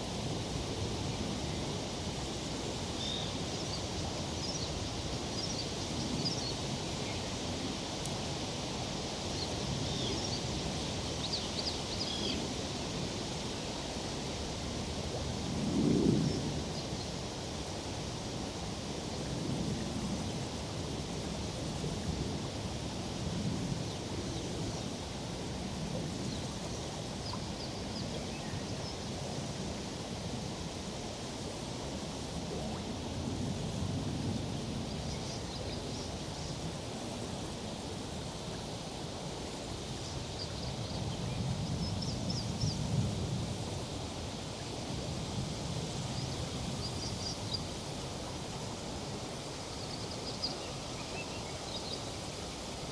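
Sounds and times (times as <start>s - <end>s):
tree foliage rustling in breeze: 0.0s - 52.9s.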